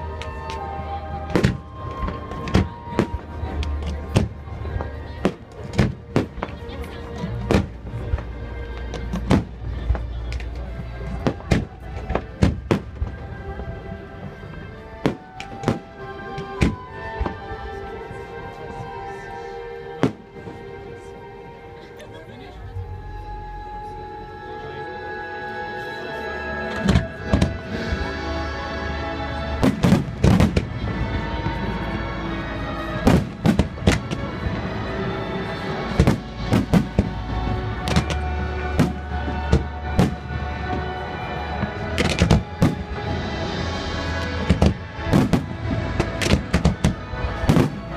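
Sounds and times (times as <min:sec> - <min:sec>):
music: 0:00.0 - 0:47.9
fireworks bursting: 0:09.0 - 0:13.3, 0:29.6 - 0:31.8, 0:32.9 - 0:34.6, 0:35.5 - 0:47.9.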